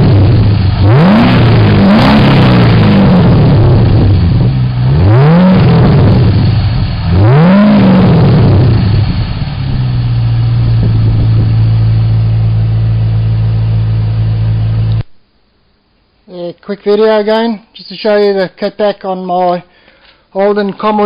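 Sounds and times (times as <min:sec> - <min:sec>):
car engine idling: 0:00.0 - 0:15.0
car engine revving: 0:00.0 - 0:15.0.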